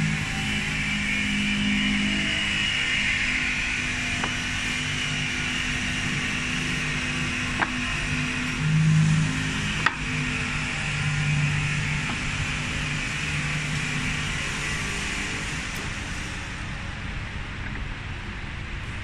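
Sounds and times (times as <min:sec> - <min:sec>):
woodworking machinery humming: 0:00.0 - 0:17.6.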